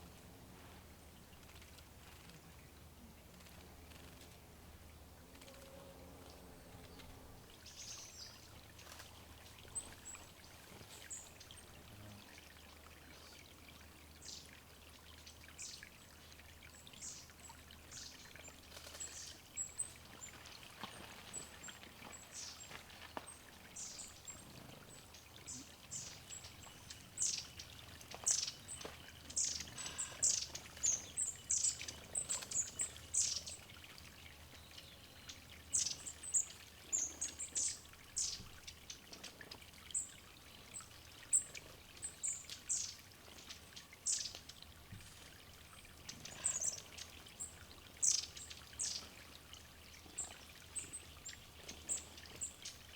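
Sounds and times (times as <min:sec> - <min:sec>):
water trickling: 0:01.1 - 0:52.9
small songbirds chirping: 0:06.3 - 0:52.9.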